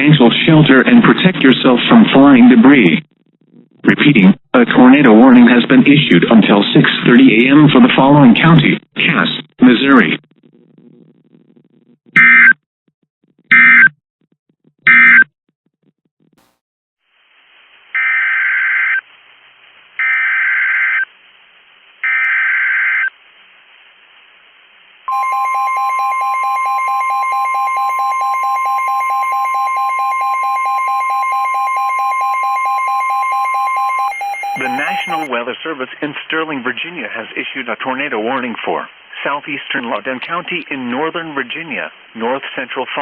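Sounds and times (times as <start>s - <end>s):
two-tone attention signal: 25.1s - 35.3s
digital data bursts: 33.2s - 35.3s.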